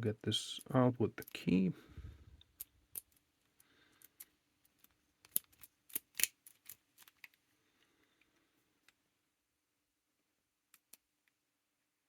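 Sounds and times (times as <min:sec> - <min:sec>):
padlock metallic clicks: 0:05.2 - 0:07.4.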